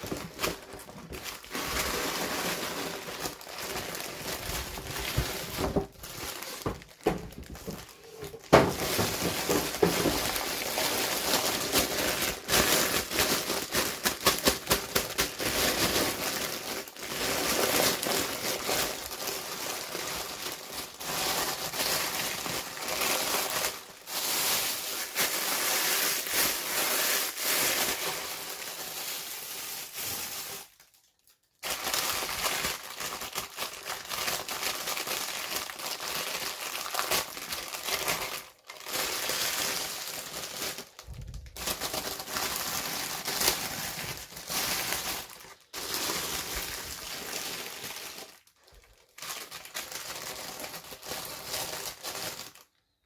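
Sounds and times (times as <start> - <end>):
plastic packaging crinkling: 0.0 - 53.0.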